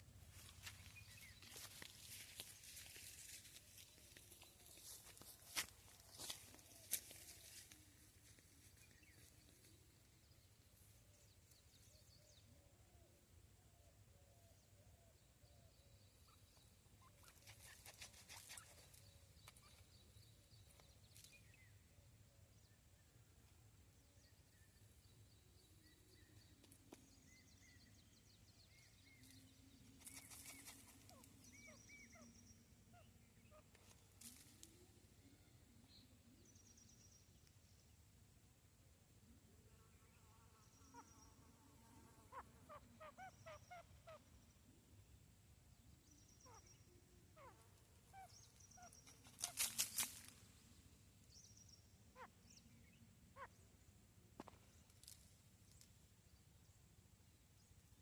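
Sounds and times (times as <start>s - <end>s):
brief crackles: 49.2s - 50.4s.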